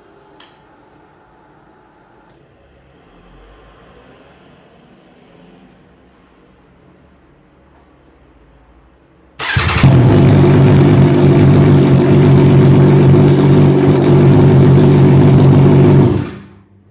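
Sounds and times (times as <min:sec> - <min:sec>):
motorcycle starter cranking: 0:09.4 - 0:16.3
motorcycle engine idling: 0:09.4 - 0:16.5.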